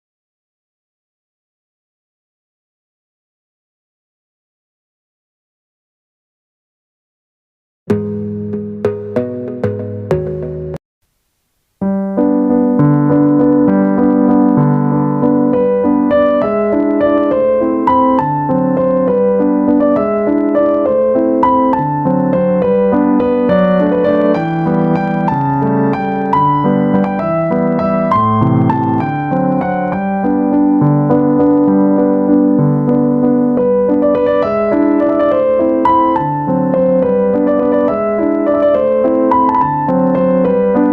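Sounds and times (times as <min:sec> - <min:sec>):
piano music: 0:07.9 - 0:10.8, 0:11.8 - 0:40.9.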